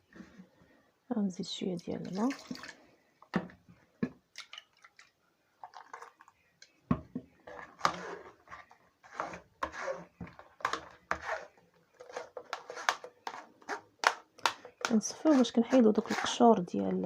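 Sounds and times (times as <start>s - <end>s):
spoon scraping a sieve: 7.4s - 13.9s, 14.8s - 16.6s.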